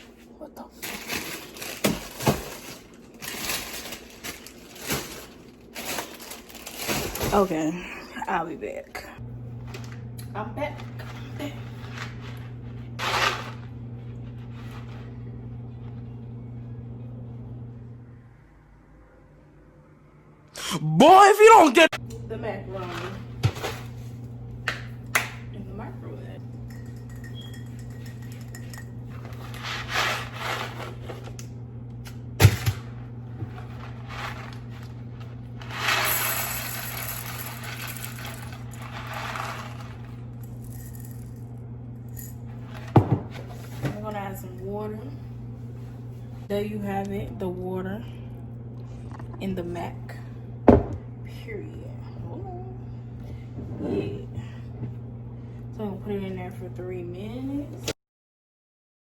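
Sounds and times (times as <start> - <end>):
appliance electrical hum: 0.0 - 58.0.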